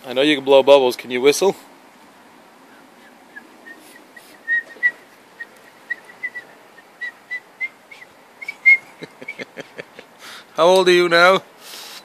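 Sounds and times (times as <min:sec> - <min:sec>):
child whistling: 0:03.6 - 0:08.9.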